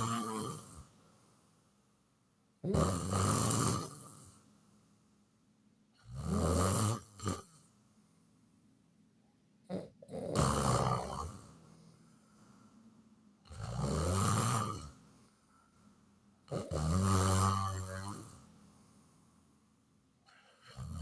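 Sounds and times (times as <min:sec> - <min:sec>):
person snoring loudly: 0:00.0 - 0:00.9, 0:02.6 - 0:04.2, 0:06.1 - 0:07.5, 0:09.7 - 0:11.5, 0:13.5 - 0:15.0, 0:16.5 - 0:18.4, 0:20.6 - 0:21.0.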